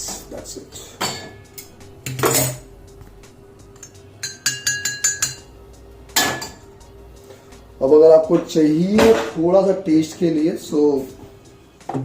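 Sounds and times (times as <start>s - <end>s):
spoon clinking on crockery: 3.8s - 5.5s.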